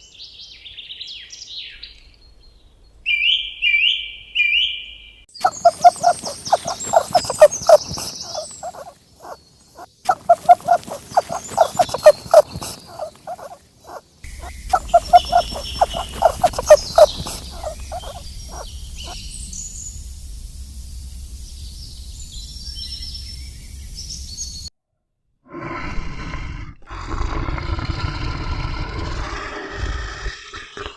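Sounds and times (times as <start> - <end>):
high bird chirps: 3.2 - 19.4
animal calling in quick pulses: 5.4 - 19.2
steady outdoor hiss: 5.4 - 24.7.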